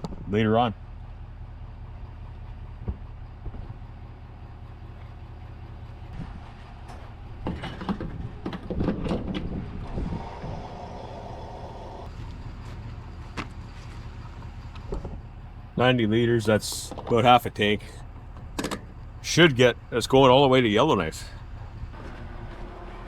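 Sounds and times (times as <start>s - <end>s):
pump gear clunks and rattles: 6.2s - 9.7s, 12.5s - 20.0s
steady low hum: 9.6s - 23.0s
steady whine: 10.4s - 23.0s.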